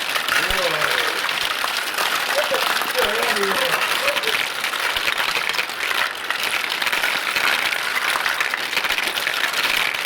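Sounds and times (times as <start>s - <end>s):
marbles rattling down a marble run: 0.0s - 10.0s.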